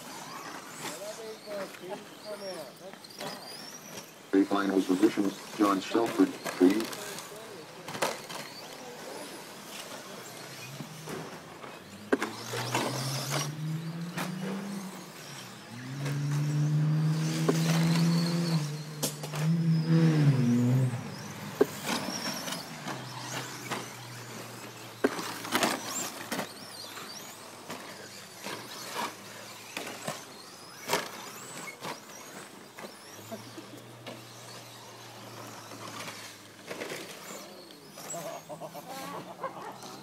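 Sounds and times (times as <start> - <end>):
faint motor whine: 0.0 - 40.0
low engine-like drone: 8.7 - 30.3
knocks and clicks from cars: 10.8 - 15.0, 16.0 - 27.8.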